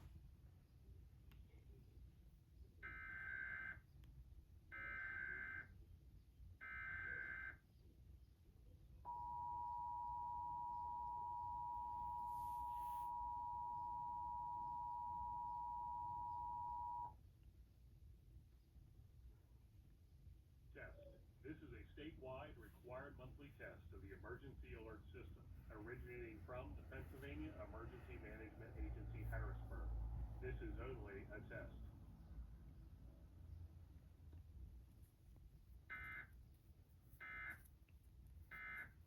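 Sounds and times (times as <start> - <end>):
two-tone attention signal: 9.1 - 17.1.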